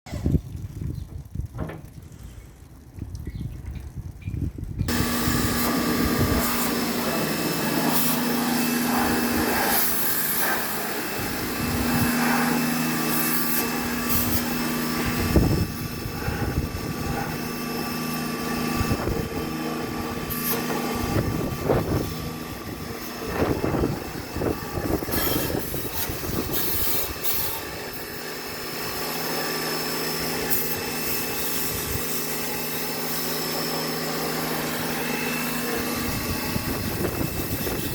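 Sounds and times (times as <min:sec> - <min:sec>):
knocks and rattles: 0:00.9 - 0:02.0
pressure washer pump running: 0:04.9 - 0:37.9.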